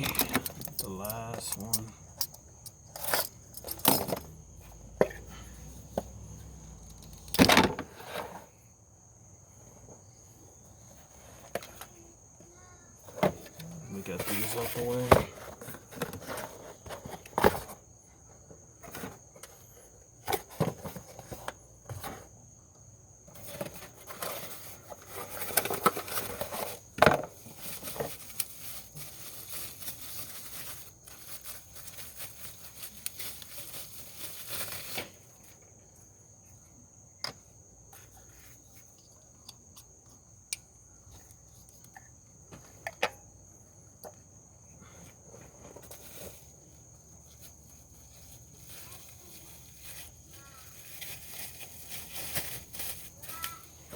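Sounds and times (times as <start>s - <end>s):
rustling and crinkling: 0.0s - 8.6s, 9.6s - 22.6s, 23.2s - 36.7s, 44.0s - 53.9s.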